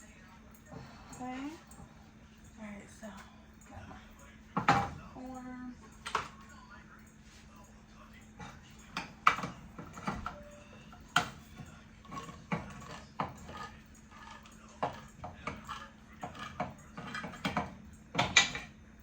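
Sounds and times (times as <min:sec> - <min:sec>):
metal cans and kitchenware clinking: 0:08.5 - 0:18.8.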